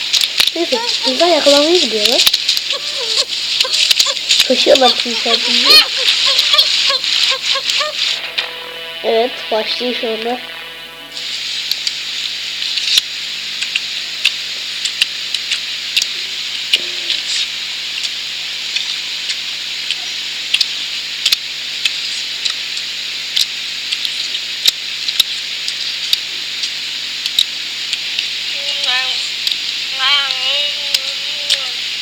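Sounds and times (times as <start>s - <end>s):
sharp clicks and crackles: 0.0s - 8.2s, 11.6s - 12.0s, 12.7s - 28.4s, 29.4s - 29.8s
high outdoor hiss: 0.0s - 32.0s.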